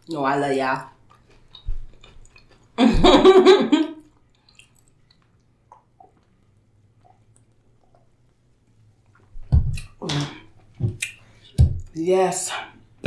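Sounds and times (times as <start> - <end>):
woman laughing: 2.8 - 4.0.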